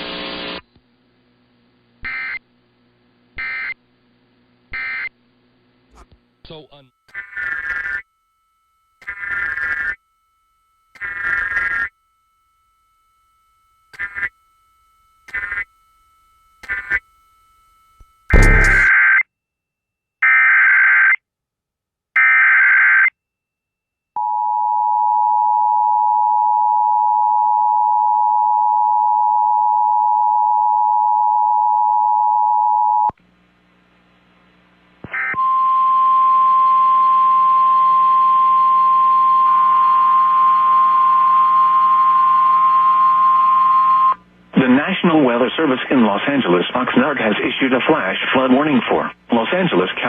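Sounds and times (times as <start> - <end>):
humming background: 0.0 - 18.9
steady warning tone: 6.4 - 18.9
screeching data bursts: 7.1 - 8.0, 9.0 - 10.0, 14.0 - 14.3, 18.3 - 19.0
two-tone attention signal: 18.3 - 18.9.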